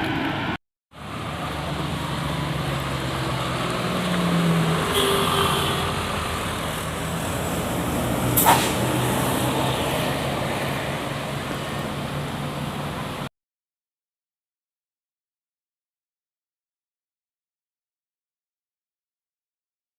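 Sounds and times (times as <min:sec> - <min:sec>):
large vehicle engines humming: 0:00.0 - 0:13.3
traffic noise: 0:00.0 - 0:13.3
short sharp hiss: 0:08.4 - 0:08.9.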